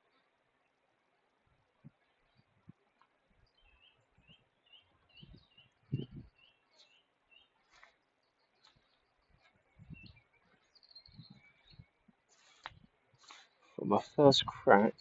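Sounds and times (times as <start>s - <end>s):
low thumps on microphone: 5.2s - 6.3s, 9.8s - 10.2s.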